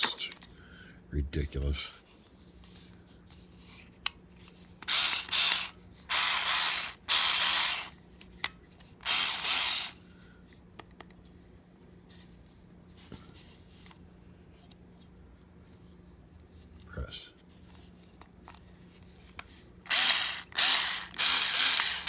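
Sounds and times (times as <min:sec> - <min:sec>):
small tool clicks: 0:04.8 - 0:10.0, 0:19.9 - 0:22.0
loud rasping bursts: 0:04.9 - 0:07.9, 0:09.0 - 0:10.0, 0:19.9 - 0:22.0.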